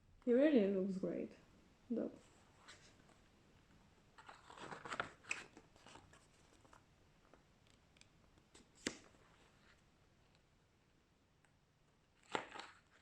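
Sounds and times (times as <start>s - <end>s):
paper pages rustling: 2.4s - 3.2s, 4.2s - 7.4s, 12.2s - 13.0s.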